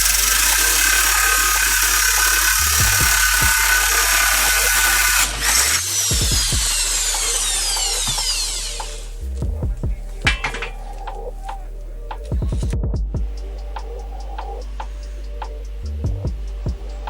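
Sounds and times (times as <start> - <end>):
angle grinder whining: 0.0 - 9.2, 10.3 - 11.6
background music: 0.0 - 17.0.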